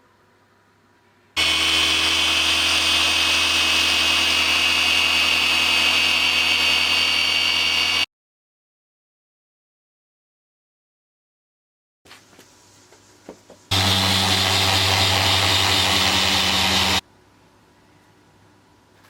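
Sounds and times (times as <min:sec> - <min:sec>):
power tool motor whining: 0:01.4 - 0:08.1, 0:13.7 - 0:17.0.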